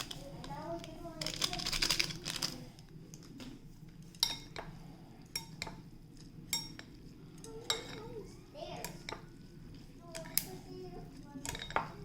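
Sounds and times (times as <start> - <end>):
dishes and utensils clinking: 4.1 - 5.9, 6.5 - 8.2, 8.8 - 9.5, 11.4 - 12.0.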